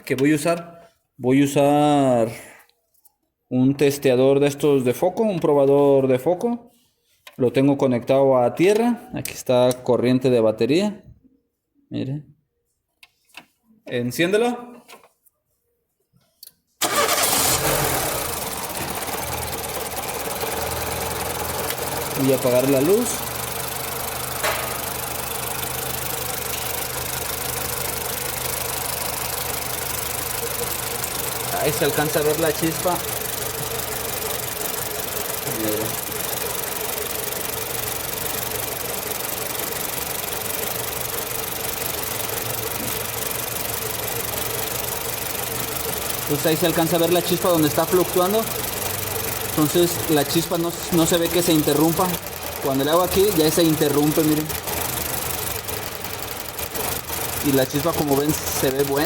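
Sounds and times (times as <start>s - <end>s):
engine starting and idling: 16.8s - 59.0s.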